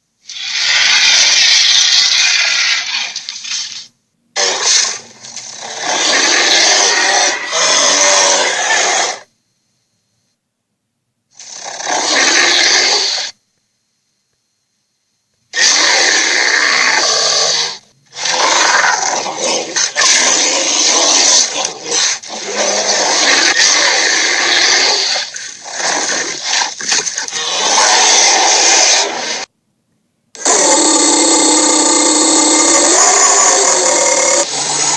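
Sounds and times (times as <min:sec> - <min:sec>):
monster growls and roars: 0:00.3 - 0:03.1, 0:04.4 - 0:09.3, 0:15.6 - 0:29.5, 0:30.4 - 0:34.9.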